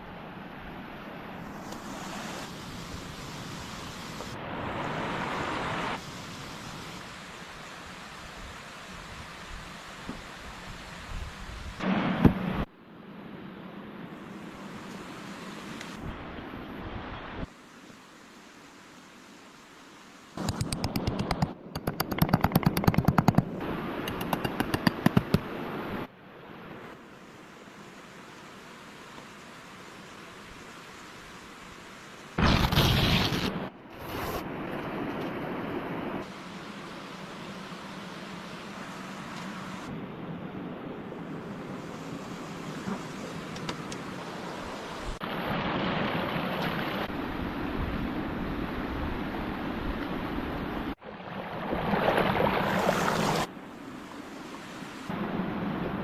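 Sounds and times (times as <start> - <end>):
wind: 0.0 - 56.0
sea surf washing: 1.0 - 12.7, 34.0 - 56.0
rapid sharp taps: 20.4 - 23.5, 24.1 - 25.5.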